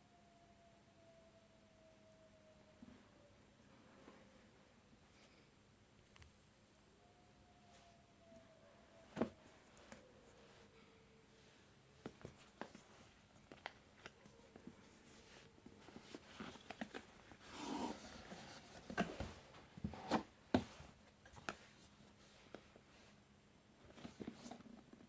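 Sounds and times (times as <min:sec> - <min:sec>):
light taps and clicks on packaging: 0:12.0 - 0:14.8.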